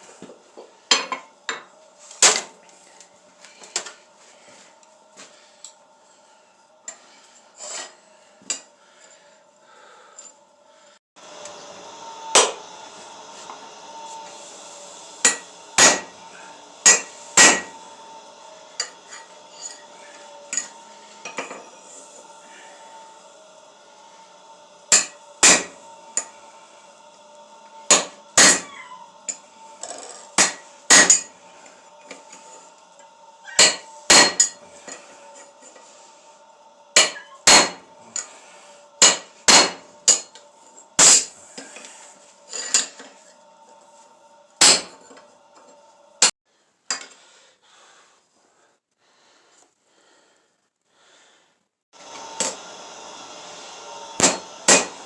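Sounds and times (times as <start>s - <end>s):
steady hum: 0.0s - 46.3s
hammer striking steel on anvil: 12.3s - 12.6s, 15.2s - 16.2s, 16.8s - 17.8s, 24.9s - 26.3s, 27.9s - 28.7s, 30.4s - 31.4s, 33.5s - 34.6s, 37.0s - 38.3s, 39.0s - 40.4s, 41.0s - 41.4s, 44.6s - 45.2s, 54.2s - 55.0s
hiss: 12.3s - 32.8s.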